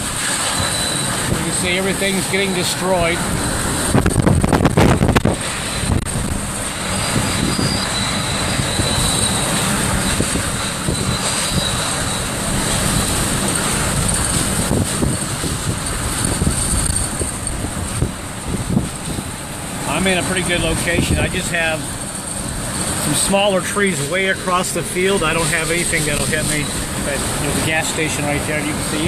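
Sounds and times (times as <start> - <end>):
hurricane wind rushing: 0.0 - 29.0
faint high whistle: 0.6 - 1.6, 7.4 - 9.6, 10.9 - 12.3.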